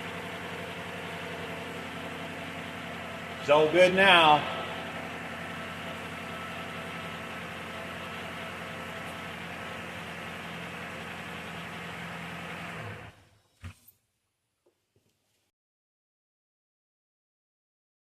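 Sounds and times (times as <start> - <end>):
car engine idling: 0.0 - 13.3.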